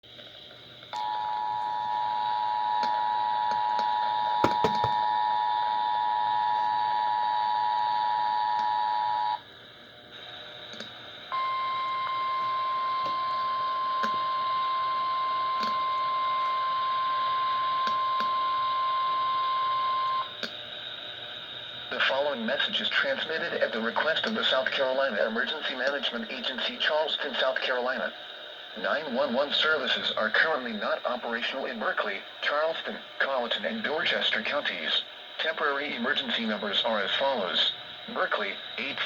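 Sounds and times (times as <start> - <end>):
radio hiss: 20.9 - 39.0.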